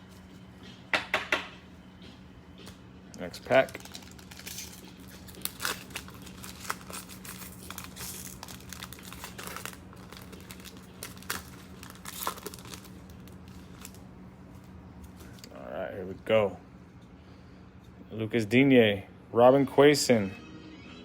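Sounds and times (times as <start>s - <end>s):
steady low hum: 0.0s - 21.0s
foil wrapper crinkling: 3.2s - 14.0s
card pack being torn open: 3.6s - 14.0s.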